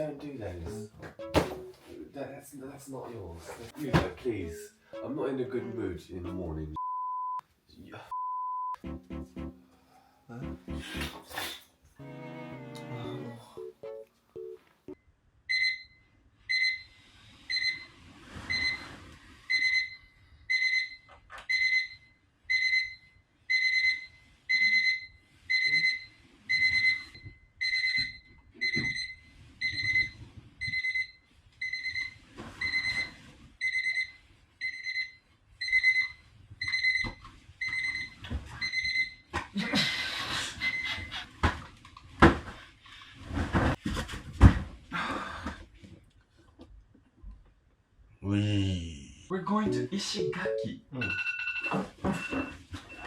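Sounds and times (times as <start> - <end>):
electronic alarm beeping: 19.5 - 39.2, 49.7 - 53.0.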